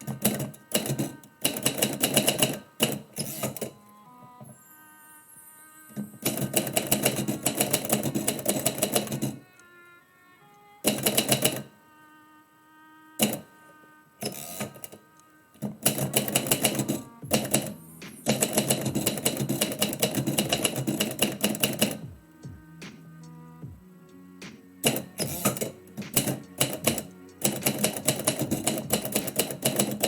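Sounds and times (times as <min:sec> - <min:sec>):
typewriter keys typing: 0:00.0 - 0:03.7, 0:06.2 - 0:09.4, 0:10.9 - 0:11.7, 0:15.6 - 0:22.1, 0:24.8 - 0:30.0
quiet background music: 0:00.0 - 0:30.0.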